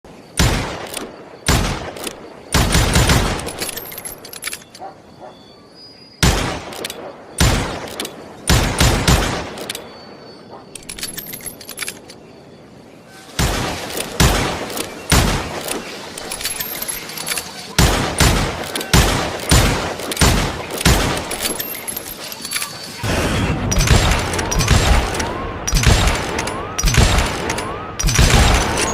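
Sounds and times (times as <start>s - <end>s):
gunshots with reverberating tail: 0.4s - 3.6s, 6.2s - 10.3s, 13.4s - 15.9s, 17.8s - 21.8s, 23.0s - 28.9s
metallic gun mechanism clicks: 3.4s - 4.9s, 6.7s - 7.0s, 9.5s - 9.9s, 10.7s - 12.2s, 15.6s - 17.8s, 18.6s - 23.0s, 23.8s - 28.9s.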